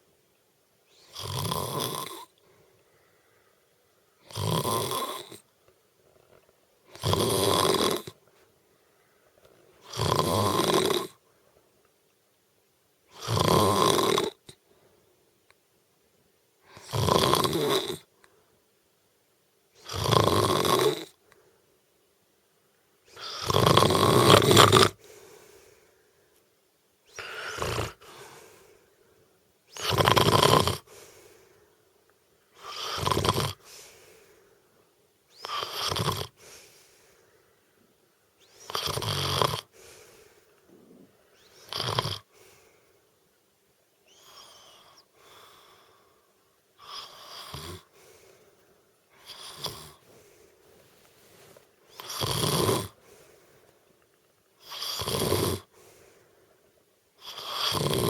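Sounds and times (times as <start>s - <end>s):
woman snoring: 1.0s - 2.3s, 4.2s - 5.4s, 6.9s - 8.2s, 9.8s - 11.2s, 13.1s - 14.4s, 16.7s - 18.1s, 19.8s - 21.2s, 23.1s - 25.0s, 27.1s - 28.6s, 29.7s - 30.9s, 32.6s - 33.7s, 35.3s - 36.4s, 38.4s - 39.8s, 40.7s - 42.3s, 46.8s - 47.9s, 49.2s - 50.0s, 51.9s - 53.0s, 54.6s - 55.7s, 57.2s - 58.0s
soft breath: 2.4s - 4.2s, 8.2s - 9.9s, 25.0s - 29.4s, 30.8s - 32.0s, 33.6s - 35.4s, 36.3s - 38.8s, 39.6s - 43.3s, 44.0s - 52.2s, 52.9s - 54.1s, 55.6s - 56.9s.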